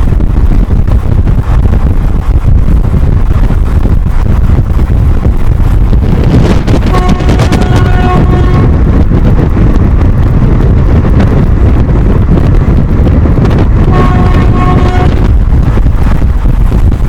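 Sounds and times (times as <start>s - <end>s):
train rumble: 0.0s - 17.0s
wind buffeting microphone: 0.0s - 17.0s
twin-tone locomotive horn: 6.8s - 8.9s, 13.8s - 15.3s.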